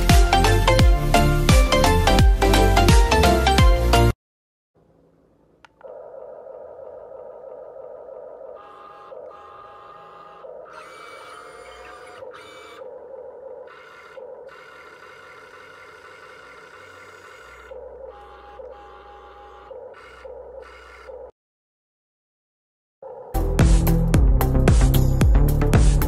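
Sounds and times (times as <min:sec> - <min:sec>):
small electric motors whining: 0:08.6 - 0:21.4.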